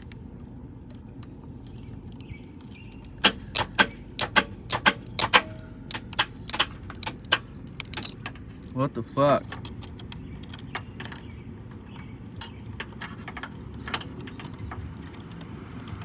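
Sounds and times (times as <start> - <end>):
relay clicking: 1.7 - 8.4.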